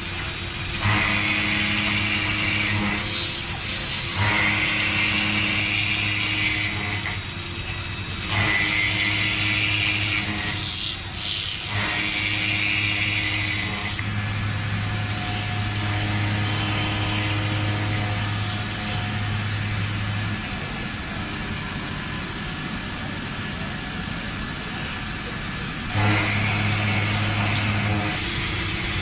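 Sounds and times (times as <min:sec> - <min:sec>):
industrial machinery humming: 0:00.0 - 0:29.0
hissing cutting noise bursts: 0:08.3 - 0:22.1, 0:25.9 - 0:29.0.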